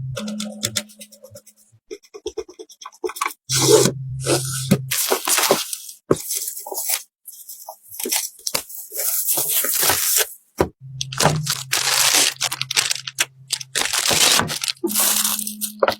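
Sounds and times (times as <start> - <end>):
plastic packaging crinkling: 4.9 - 10.4, 11.1 - 15.9.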